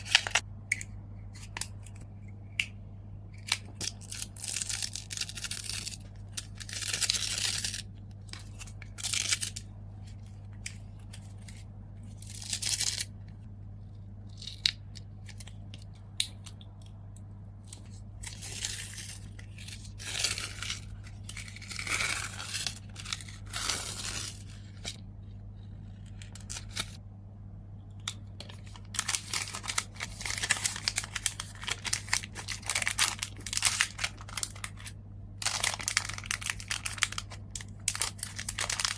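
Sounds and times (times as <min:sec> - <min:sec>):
packaging tearing and crinkling: 0:00.0 - 0:00.4, 0:03.4 - 0:09.6, 0:17.8 - 0:25.0, 0:26.0 - 0:27.0, 0:28.4 - 0:38.9.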